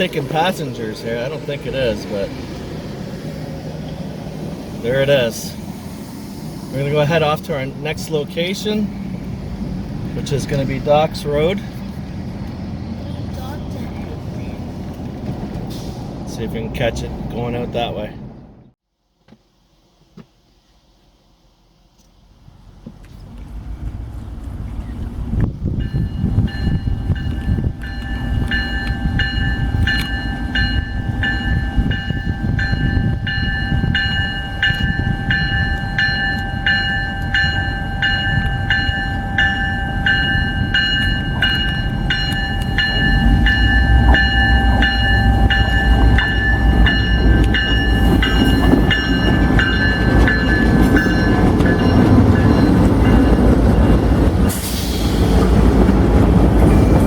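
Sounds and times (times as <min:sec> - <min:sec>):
railroad crossing bell ringing: 0:00.0 - 0:05.8, 0:06.6 - 0:11.8, 0:25.7 - 0:55.4
train rumble: 0:00.0 - 0:18.8, 0:19.8 - 0:57.0.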